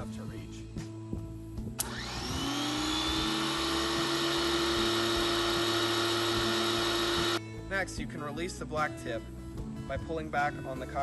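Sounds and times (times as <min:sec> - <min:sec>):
pressure washer motor running: 0:01.8 - 0:07.4.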